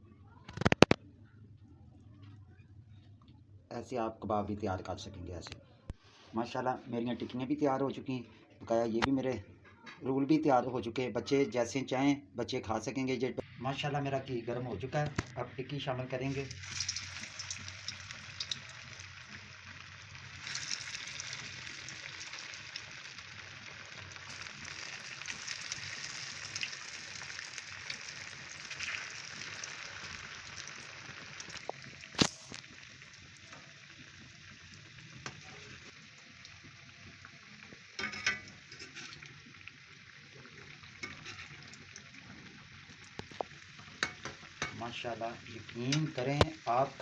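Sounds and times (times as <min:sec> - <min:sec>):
food sizzling in oil: 0:15.2 - 0:47.0.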